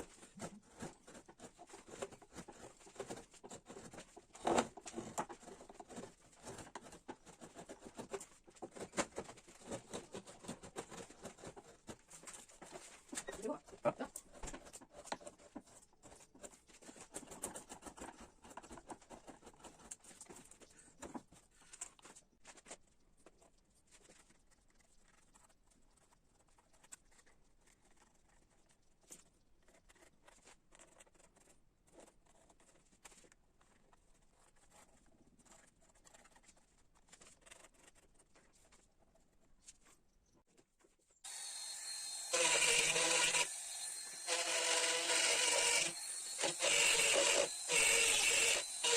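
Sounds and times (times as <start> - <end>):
taps and scrapes of woodworking: 0.0 - 24.8
power tool whining: 41.3 - 48.9.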